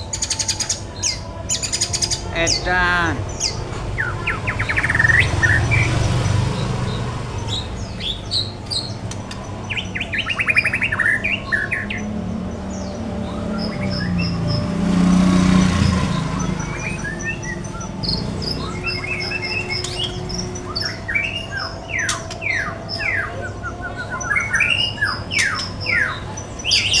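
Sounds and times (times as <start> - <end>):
songbird whistling and chirping: 15.8 - 27.0.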